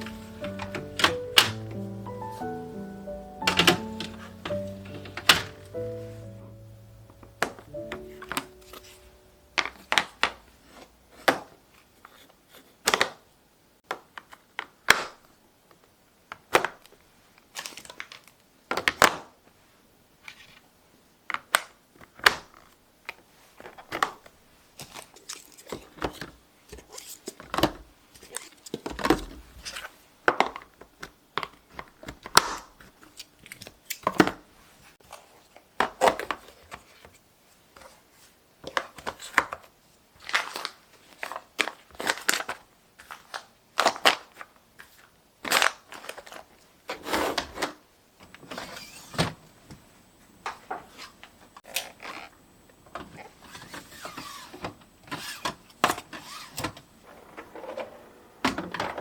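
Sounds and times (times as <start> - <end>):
soft crinkling and rustling: 19.4 - 46.7.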